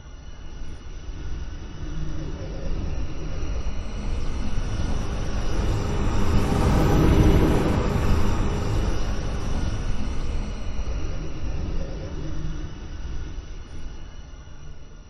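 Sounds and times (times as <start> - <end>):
rising fly-by whoosh: 3.6 - 11.3.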